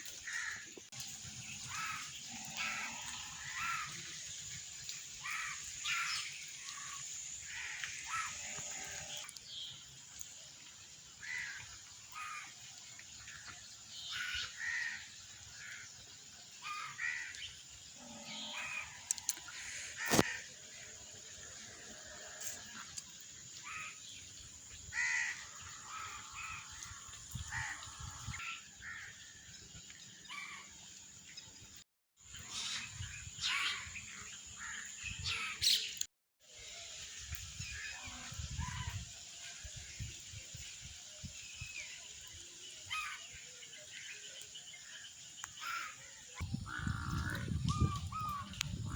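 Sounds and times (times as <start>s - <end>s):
birds calling: 16.6s - 20.5s, 42.8s - 48.9s
steady high-pitched hiss: 36.5s - 46.9s.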